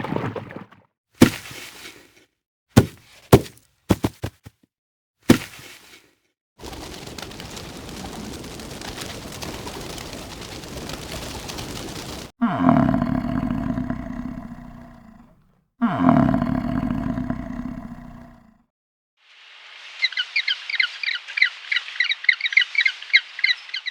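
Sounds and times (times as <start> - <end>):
animal's deep roar: 9.4 - 18.6.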